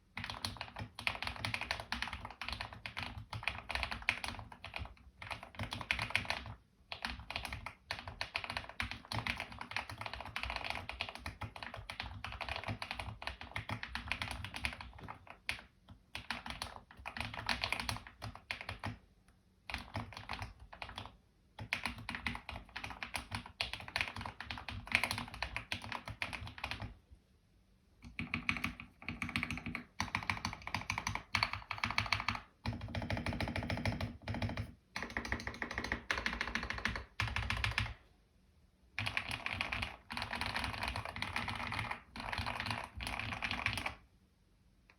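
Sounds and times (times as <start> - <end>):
typing on mechanical keyboard: 0.0 - 27.0, 28.0 - 38.0, 39.0 - 44.1.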